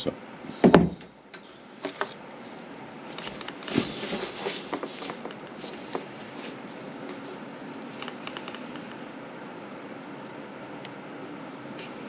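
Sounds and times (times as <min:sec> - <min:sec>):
rustling and scraping: 0:01.8 - 0:09.1.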